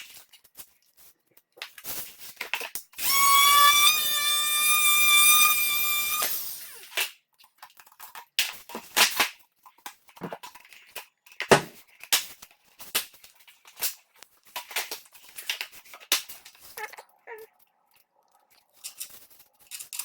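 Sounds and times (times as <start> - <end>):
vinyl being cut by hand: 3.0 - 7.1.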